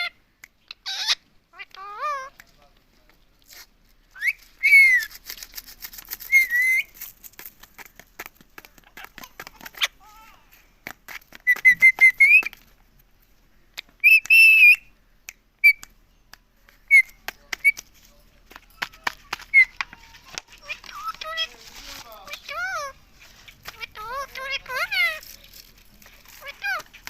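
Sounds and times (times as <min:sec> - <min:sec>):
parakeet whistled calls: 0:04.2 - 0:05.1, 0:06.2 - 0:06.9, 0:11.4 - 0:12.5, 0:14.0 - 0:14.9.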